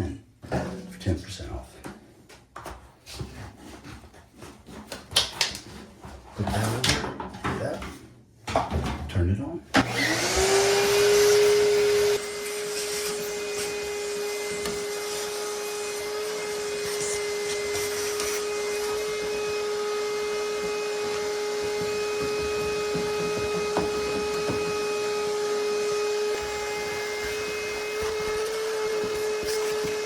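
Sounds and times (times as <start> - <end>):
vacuum cleaner sucking: 9.8 - 30.0.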